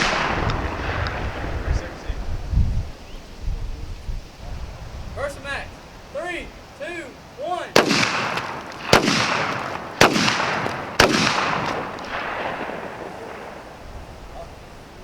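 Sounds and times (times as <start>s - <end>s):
shotgun shots ringing out: 0.0s - 2.2s, 7.7s - 13.8s.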